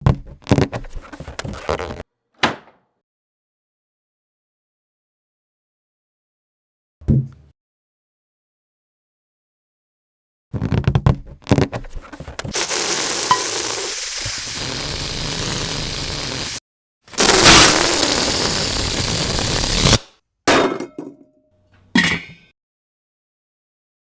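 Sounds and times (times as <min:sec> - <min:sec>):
short bursts of noise: 0:12.5 - 0:16.6, 0:17.2 - 0:20.1
steady hissing noise: 0:12.6 - 0:16.6, 0:17.2 - 0:20.0.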